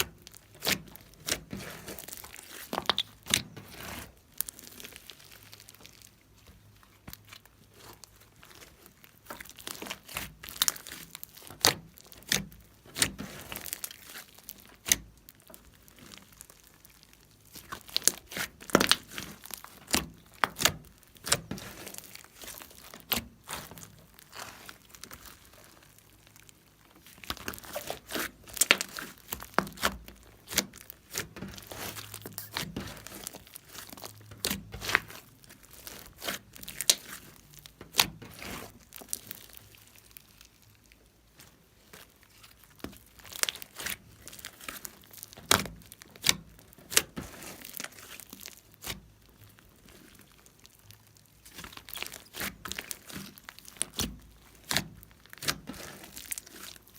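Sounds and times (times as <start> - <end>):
slime clicking and popping: 0.2 - 3.4.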